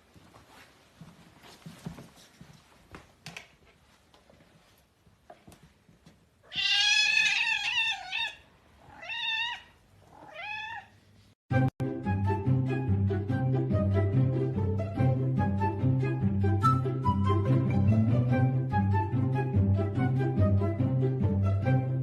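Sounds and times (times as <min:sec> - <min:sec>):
cat meowing: 0:06.4 - 0:11.0.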